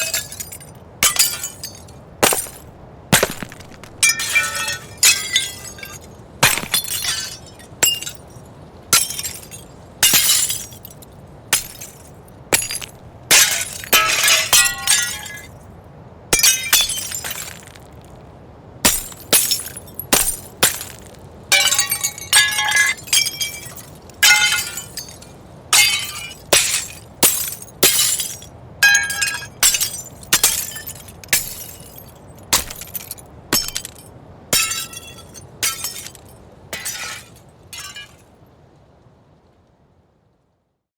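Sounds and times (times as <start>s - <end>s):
window glass breaking: 0.0s - 8.2s, 8.9s - 10.9s, 11.5s - 15.4s, 18.8s - 25.2s, 25.8s - 36.2s, 36.8s - 38.2s
glass shards tinkling: 0.0s - 15.6s, 16.4s - 17.8s, 18.8s - 38.2s
faint background ambience: 0.0s - 40.8s.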